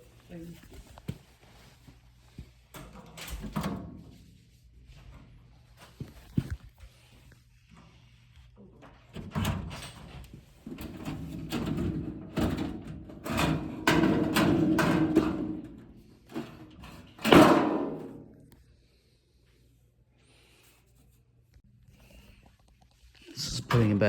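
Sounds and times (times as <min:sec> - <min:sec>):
metal drawer sliding and rattling: 0:09.2 - 0:15.8.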